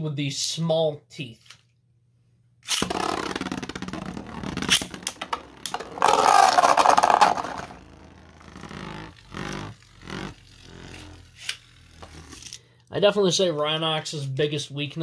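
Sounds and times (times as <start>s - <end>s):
spinning tops whirring and scraping: 2.7s - 12.6s.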